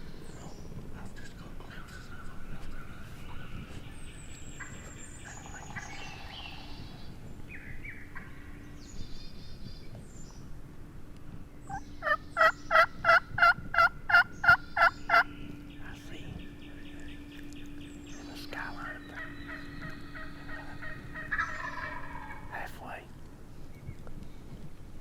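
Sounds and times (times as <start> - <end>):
faint songbird calls: 0.0 - 24.5
turkey yelps: 11.7 - 15.2, 19.2 - 22.5.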